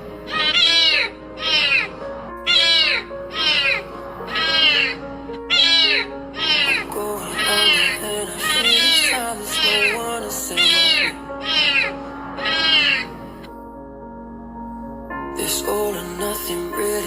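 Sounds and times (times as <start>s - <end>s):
background music with held notes: 0.0s - 17.0s
cat meowing: 0.3s - 13.2s.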